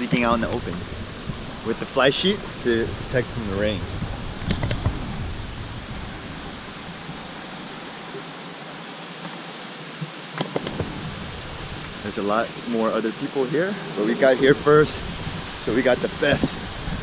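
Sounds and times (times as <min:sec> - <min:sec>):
waterfall rushing: 0:00.0 - 0:17.0
low rumble: 0:00.3 - 0:07.8.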